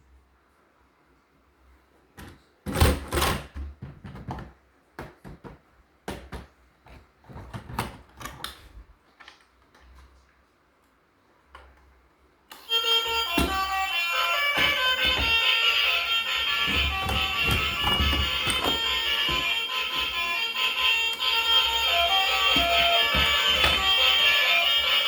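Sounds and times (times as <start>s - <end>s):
music: 12.5s - 25.0s.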